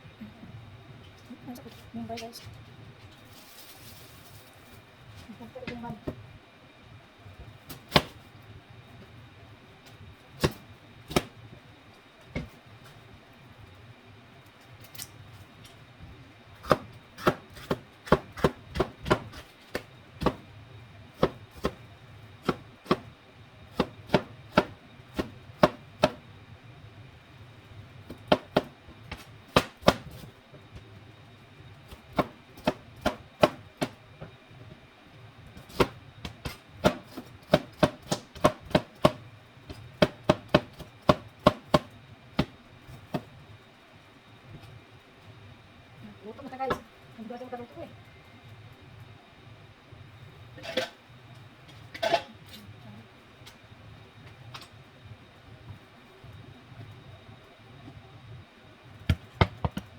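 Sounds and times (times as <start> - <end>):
knife chopping on cutting board: 10.4 - 11.3, 16.6 - 20.4, 21.2 - 21.8, 22.4 - 23.1, 23.7 - 26.2, 28.1 - 30.2, 31.9 - 34.0, 35.6 - 39.2, 40.0 - 42.5.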